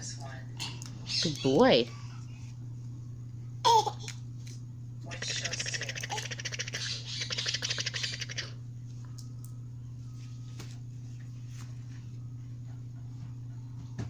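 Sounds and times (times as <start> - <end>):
steady low hum: 0.0 - 14.0
parrot raspy chatter: 1.1 - 1.8, 5.1 - 8.6.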